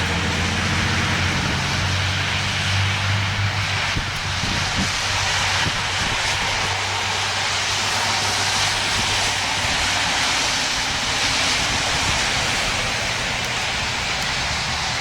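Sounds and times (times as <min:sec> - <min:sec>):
loud rushing noise: 0:00.0 - 0:15.0
low engine hum: 0:00.0 - 0:15.0.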